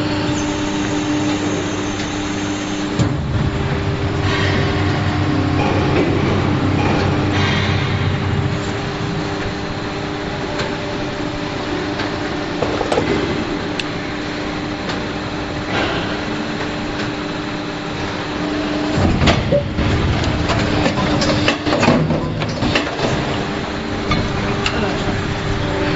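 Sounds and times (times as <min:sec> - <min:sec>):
machine mechanical hum: 0:00.0 - 0:25.9
clanks and clatter: 0:19.0 - 0:23.4.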